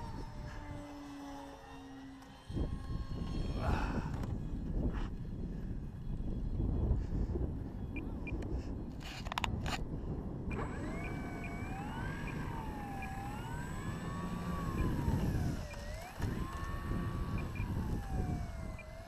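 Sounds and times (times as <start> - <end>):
emergency vehicle siren wailing: 0.0 - 4.8, 10.5 - 19.0.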